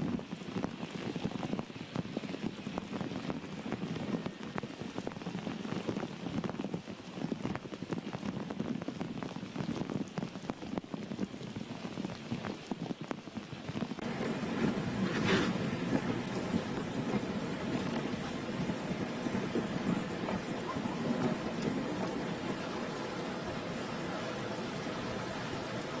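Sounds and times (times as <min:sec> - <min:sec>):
heavy rain on hard surfaces: 0:00.0 - 0:26.0.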